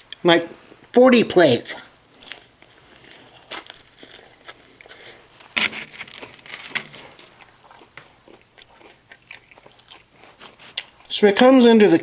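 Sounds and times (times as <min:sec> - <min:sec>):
person chewing crunchy food: 0:02.1 - 0:11.1.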